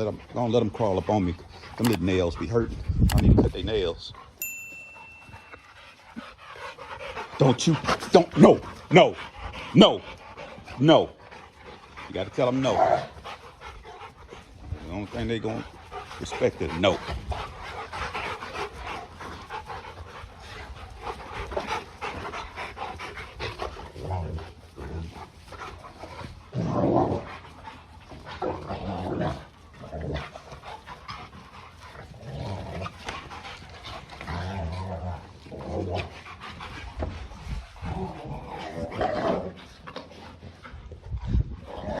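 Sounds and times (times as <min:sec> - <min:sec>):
puppies panting: 0:00.0 - 0:42.0
puppies whining: 0:04.4 - 0:06.9.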